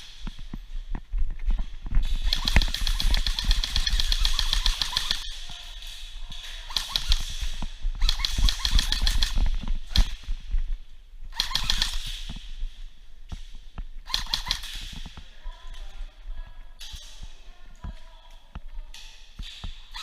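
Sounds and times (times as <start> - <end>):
airsoft guns firing in bursts: 2.0 - 5.3, 6.7 - 10.3, 11.3 - 12.4, 14.0 - 15.1.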